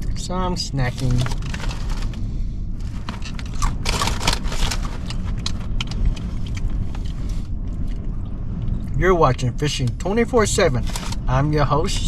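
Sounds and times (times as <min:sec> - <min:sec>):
wind rumbling on microphone: 0:00.0 - 0:12.0
person crunching corn chips: 0:00.8 - 0:02.2, 0:02.8 - 0:07.2.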